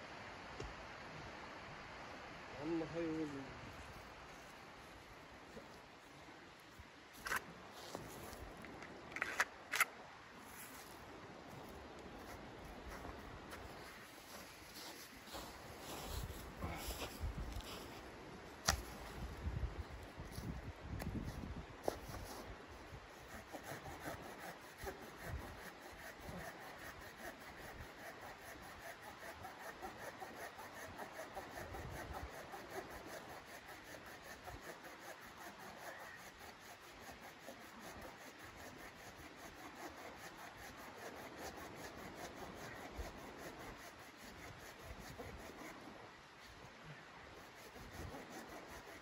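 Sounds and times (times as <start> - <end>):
rhythmic rasping scrape: 23.1 - 45.8, 47.4 - 49.0.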